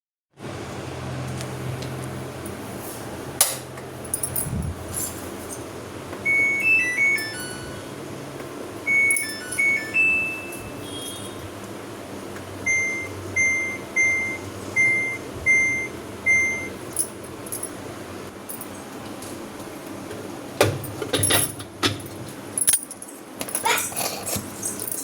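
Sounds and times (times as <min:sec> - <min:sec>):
washing machine chime tune: 0:06.2 - 0:11.5, 0:12.6 - 0:17.5.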